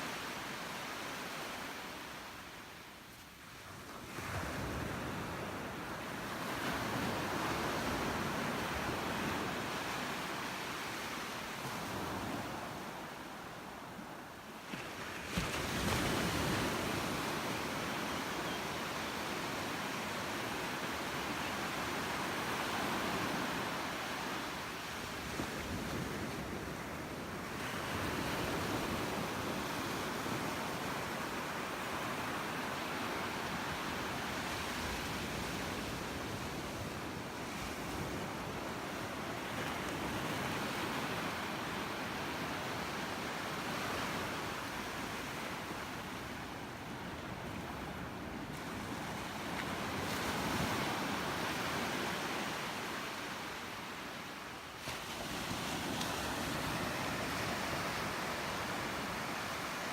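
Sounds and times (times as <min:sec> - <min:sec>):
ocean waves washing: 0:54.8 - 0:59.9.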